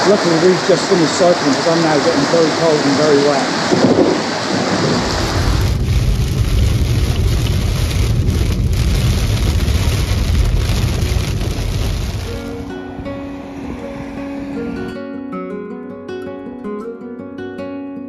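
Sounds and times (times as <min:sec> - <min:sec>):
heavy rain falling: 0:00.0 - 0:12.7
low rumble: 0:03.7 - 0:15.0.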